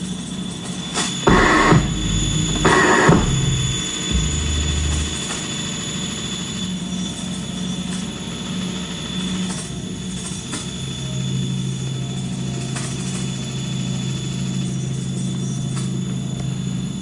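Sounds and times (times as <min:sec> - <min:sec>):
machine noise drone: 0:01.2 - 0:05.9.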